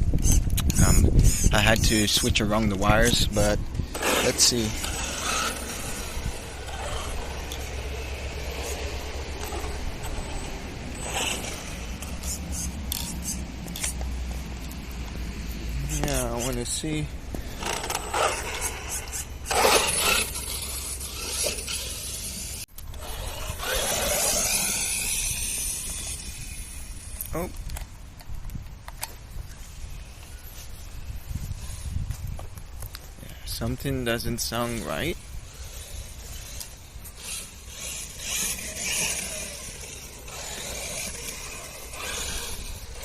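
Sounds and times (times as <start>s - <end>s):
tyre noise: 0.0s - 33.6s, 34.6s - 43.0s
scraping drivetrain noise: 0.0s - 43.0s
rc truck motor running: 0.1s - 14.8s, 17.4s - 27.8s, 34.5s - 43.0s.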